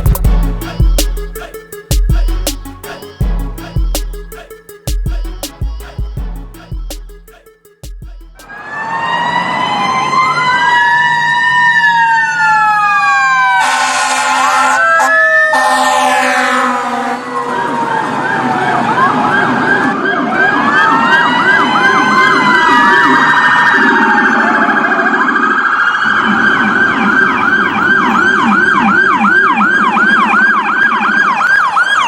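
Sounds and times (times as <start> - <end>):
electronic emergency siren: 8.4 - 32.0.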